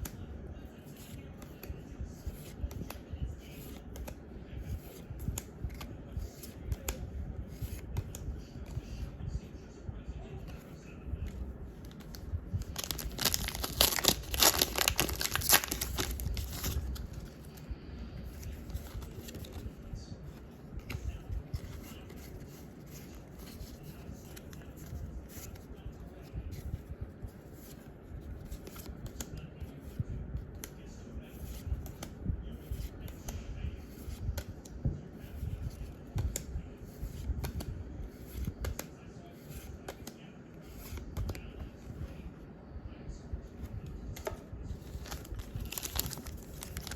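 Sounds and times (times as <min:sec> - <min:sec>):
cards rustling and clicking: 0:00.0 - 0:09.2, 0:10.4 - 0:42.2, 0:43.6 - 0:46.9
foil wrapper tearing: 0:12.8 - 0:16.8, 0:45.0 - 0:46.9.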